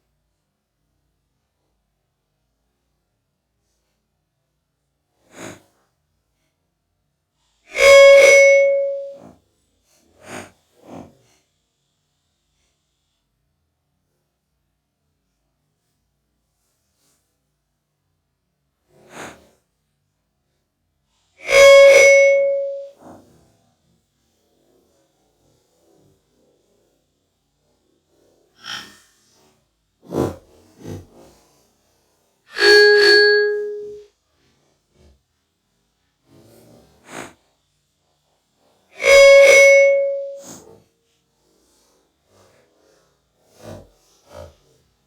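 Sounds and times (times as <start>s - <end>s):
faint short sound: 7.7s - 9.2s, 21.4s - 22.9s, 32.5s - 34.0s, 39.0s - 40.5s
loud ringing tone: 7.7s - 9.2s, 21.4s - 22.9s, 32.5s - 34.0s, 39.0s - 40.5s.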